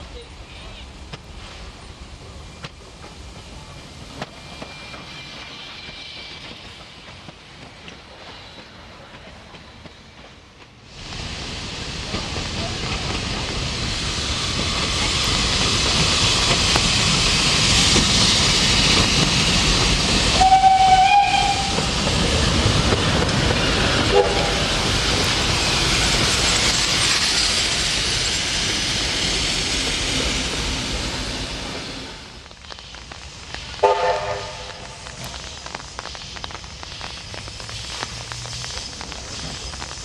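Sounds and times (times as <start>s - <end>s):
steam locomotive running past: 0.0s - 40.0s
steam whistle blast: 20.3s - 21.9s, 24.1s - 24.6s, 33.8s - 34.7s.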